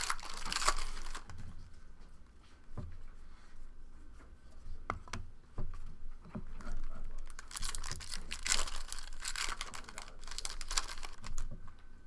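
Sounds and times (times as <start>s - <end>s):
cards rustling: 0.0s - 1.3s, 7.3s - 11.4s.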